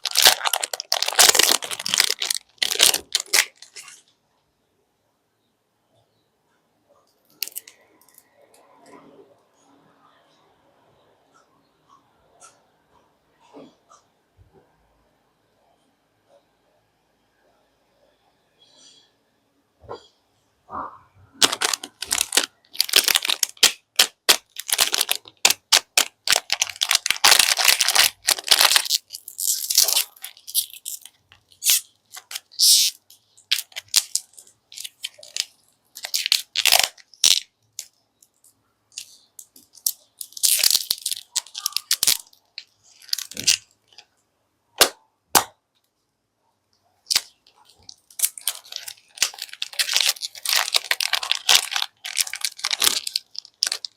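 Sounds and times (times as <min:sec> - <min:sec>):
plastic wrappers crinkling: 0:00.0 - 0:04.1, 0:07.3 - 0:07.8, 0:21.4 - 0:44.1, 0:47.1 - 0:53.9.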